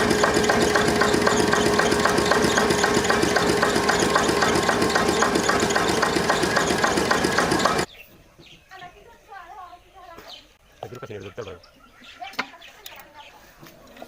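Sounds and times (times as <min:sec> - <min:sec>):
old engine idling with knocking: 0:00.0 - 0:07.9.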